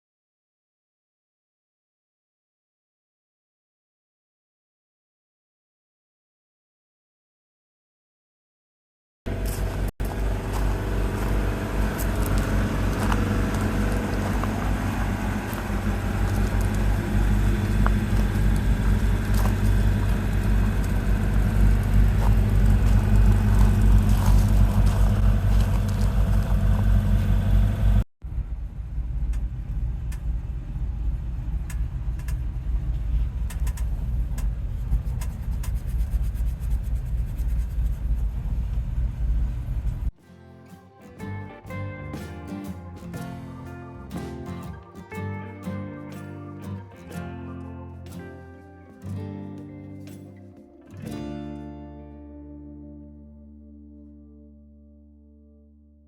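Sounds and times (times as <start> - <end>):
pickup truck engine rumbling: 9.3 - 40.1.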